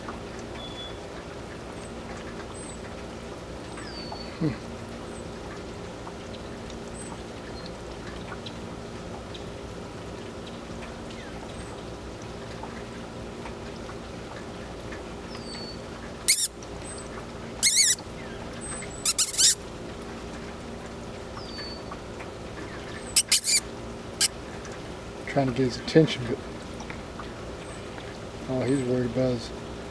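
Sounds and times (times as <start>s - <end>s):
faint bird chirps: 16.3s - 16.5s, 17.6s - 18.0s, 19.1s - 19.6s, 23.2s - 23.6s
loud short harsh noises: 17.6s - 18.0s, 19.1s - 19.6s, 23.2s - 23.6s.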